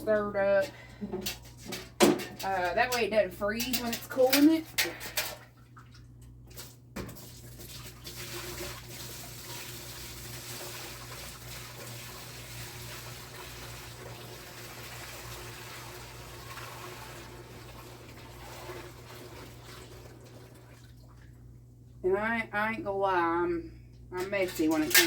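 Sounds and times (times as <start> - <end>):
milk pouring and splashing: 5.2 - 21.4.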